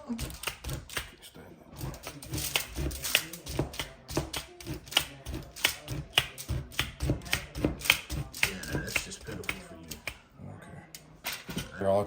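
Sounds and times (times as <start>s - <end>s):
meat tenderizer clacking: 0.1s - 1.2s, 1.8s - 10.2s.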